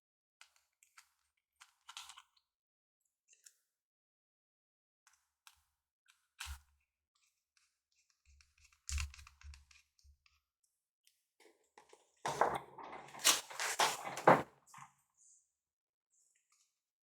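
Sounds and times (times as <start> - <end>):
small plastic clicks: 0.4 - 2.3.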